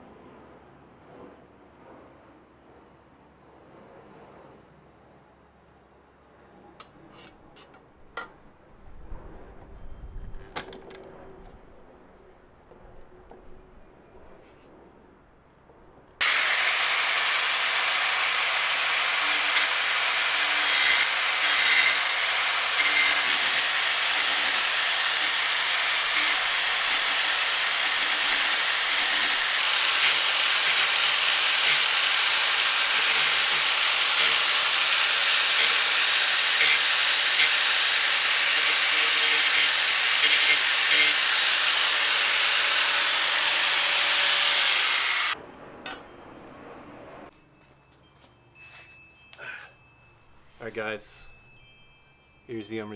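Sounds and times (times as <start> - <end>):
angle grinder grinding steel: 16.2 - 46.0.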